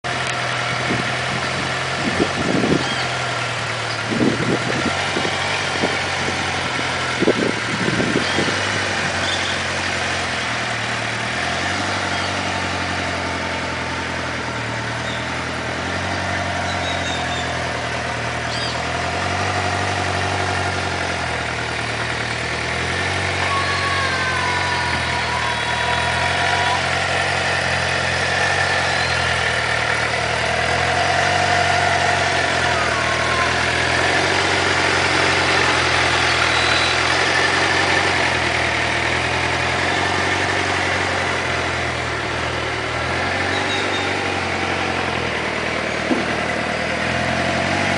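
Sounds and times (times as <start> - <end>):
motorcycle engine idling: 0.0 - 47.9
short thumps: 46.0 - 46.6.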